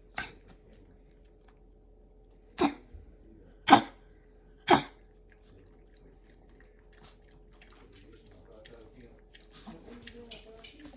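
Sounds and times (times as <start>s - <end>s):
dog coughing: 0.0s - 0.5s, 2.6s - 2.9s, 3.7s - 4.0s, 4.6s - 5.0s.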